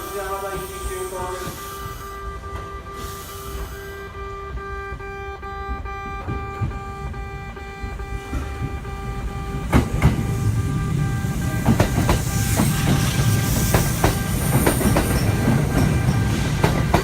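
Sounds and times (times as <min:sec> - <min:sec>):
train low rumble: 0:00.0 - 0:17.0
train wheels clacking: 0:00.0 - 0:17.0.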